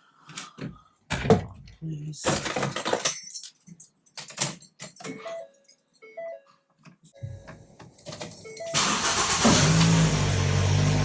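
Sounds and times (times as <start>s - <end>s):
car engine idling: 8.8s - 11.0s.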